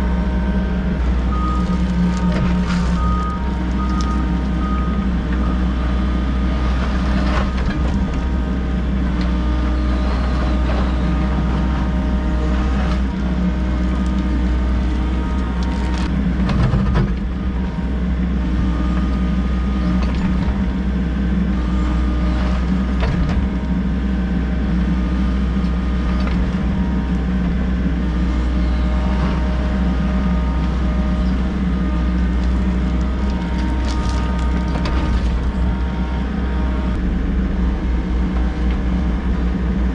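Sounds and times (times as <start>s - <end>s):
excavator engine drone: 0.0s - 39.9s
steady tones: 30.9s - 39.9s.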